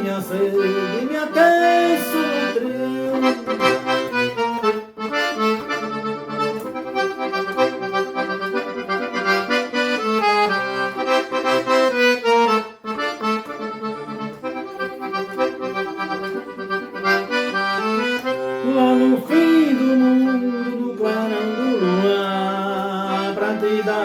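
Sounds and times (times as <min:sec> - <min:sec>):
accordion melody: 0:00.0 - 0:24.0
rhythmic backing: 0:00.0 - 0:24.0.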